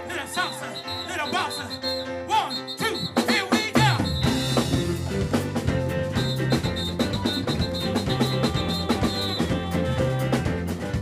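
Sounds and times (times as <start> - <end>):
bass line: 0.0 - 11.0
sustained keyboard or guitar tones: 0.1 - 11.0
drum kit beat: 0.2 - 11.0.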